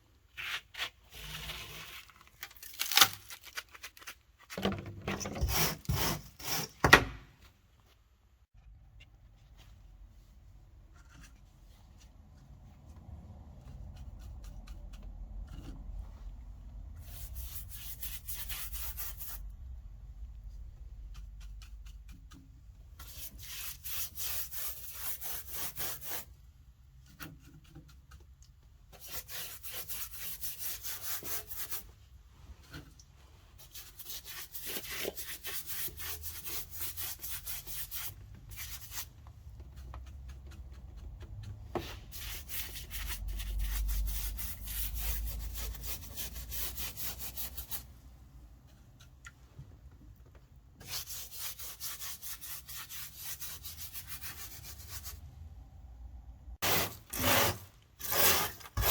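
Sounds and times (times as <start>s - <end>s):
hand sanding rasping strokes: 23.0s - 26.3s, 29.0s - 31.9s, 41.8s - 47.8s, 50.8s - 55.2s, 56.6s - 58.9s.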